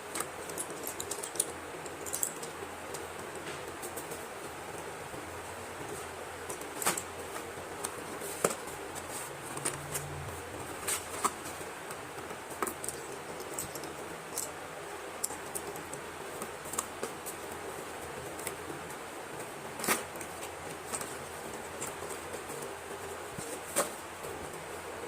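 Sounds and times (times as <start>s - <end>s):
slate pencils and packets handled: 0.0s - 4.2s, 5.9s - 18.8s.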